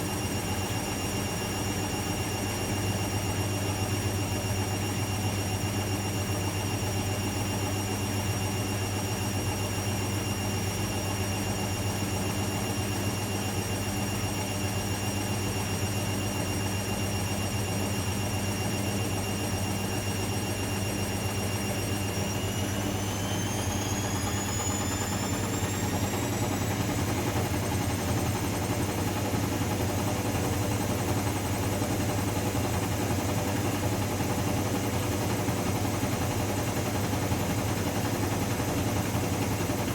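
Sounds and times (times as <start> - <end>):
washing machine spinning: 19.1 - 39.9.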